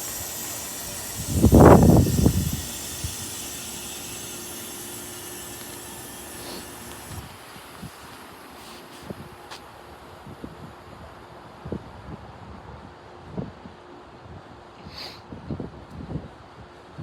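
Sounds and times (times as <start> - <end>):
heat pump hissing: 0.0 - 10.5.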